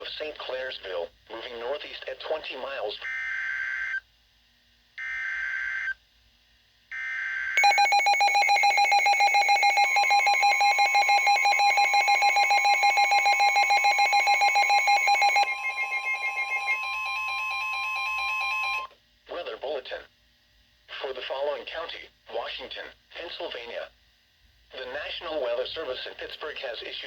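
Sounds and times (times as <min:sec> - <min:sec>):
screeching digital data bursts: 0:07.6 - 0:17.0
pulsing electronic alert tone: 0:07.6 - 0:18.9
steady alert tone: 0:07.6 - 0:18.9.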